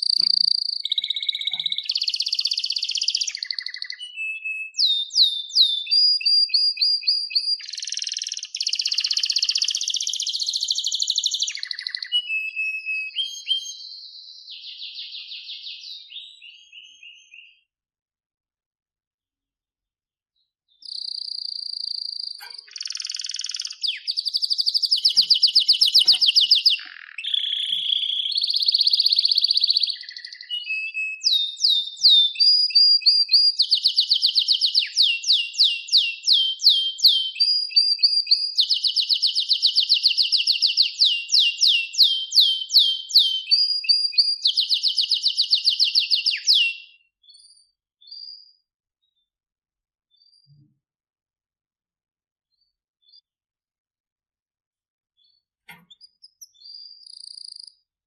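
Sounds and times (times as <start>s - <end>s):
canary singing: 0.0s - 17.7s, 20.7s - 48.2s, 55.2s - 57.8s.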